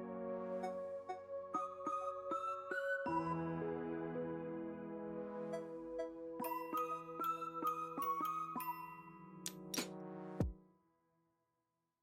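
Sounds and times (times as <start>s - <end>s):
bright chiming melody: 5.6s - 9.8s.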